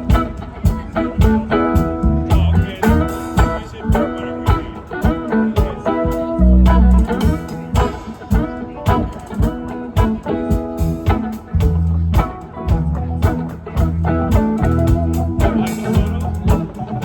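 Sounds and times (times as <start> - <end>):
blues-rock band playing: 0.0 - 17.0
heavy low bass note: 1.8 - 3.3.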